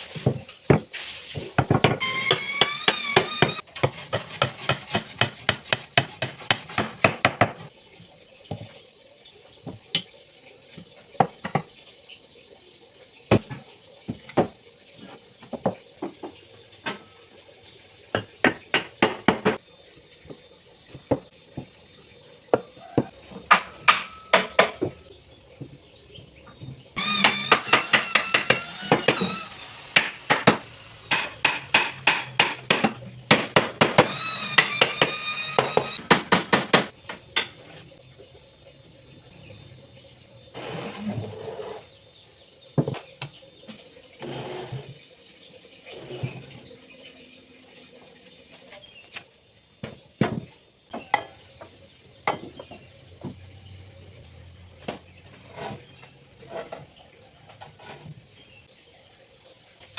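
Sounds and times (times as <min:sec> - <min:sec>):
sharp knocks and clattering: 0:01.5 - 0:07.7, 0:11.2 - 0:11.7, 0:22.5 - 0:25.0, 0:26.6 - 0:37.6, 0:49.8 - 0:53.4.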